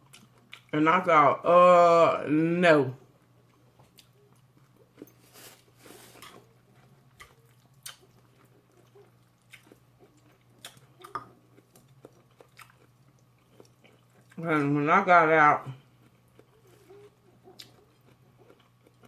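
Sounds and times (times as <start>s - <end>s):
person chewing and biting: 0.0s - 0.7s, 3.2s - 14.4s, 15.8s - 19.0s.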